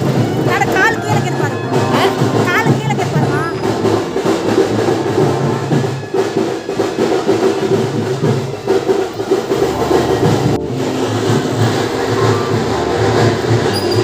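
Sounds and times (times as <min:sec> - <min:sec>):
steady held notes: 0:00.0 - 0:06.5, 0:08.8 - 0:14.0
drums and percussion: 0:00.0 - 0:14.0.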